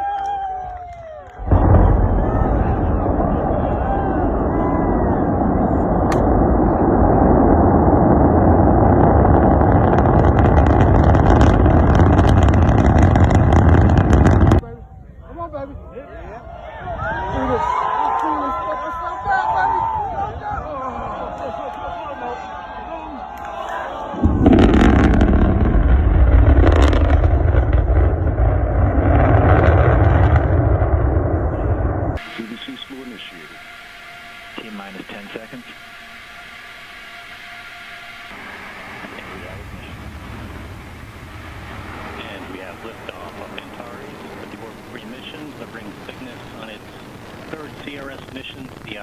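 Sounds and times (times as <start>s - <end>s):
rocket engines roaring: 0.0s - 49.0s
sharp crackling: 1.0s - 14.6s, 24.2s - 49.0s.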